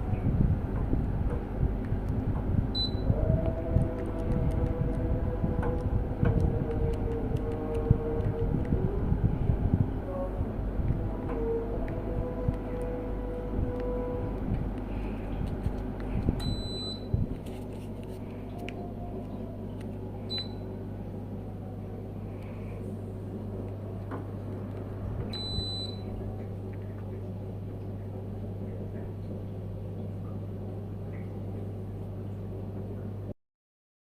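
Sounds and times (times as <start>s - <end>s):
air conditioner humming: 0.0s - 33.3s.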